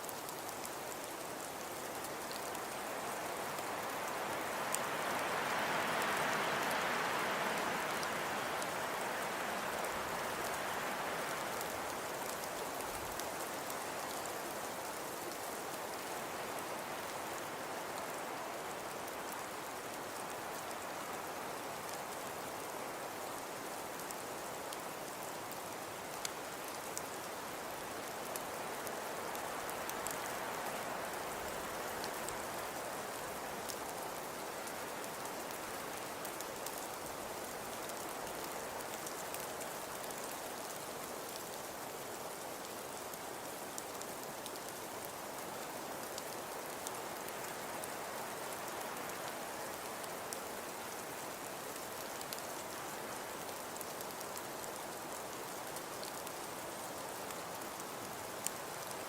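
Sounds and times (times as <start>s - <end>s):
hiss of falling precipitation: 0.0s - 59.0s
light ticks on a surface: 52.2s - 52.6s, 55.5s - 59.0s.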